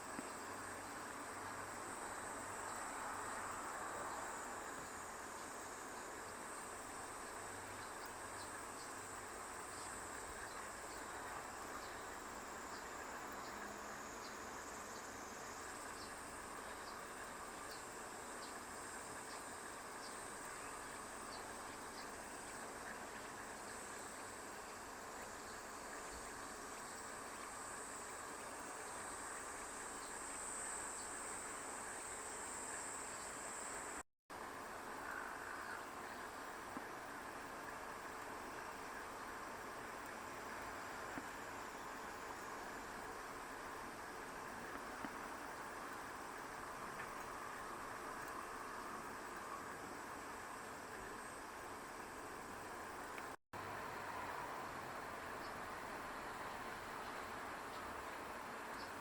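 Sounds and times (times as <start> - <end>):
low background hiss: 0.0 - 59.0
insects buzzing high-pitched: 0.1 - 34.0.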